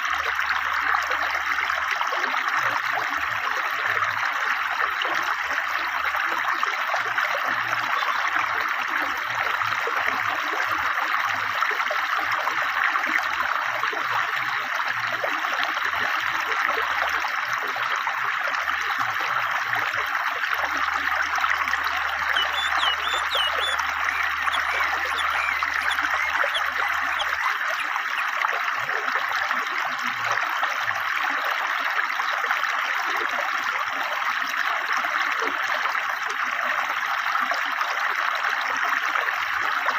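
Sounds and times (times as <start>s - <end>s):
river water rushing over stones: 21.5s - 28.7s
faint bird chirps: 22.2s - 28.3s.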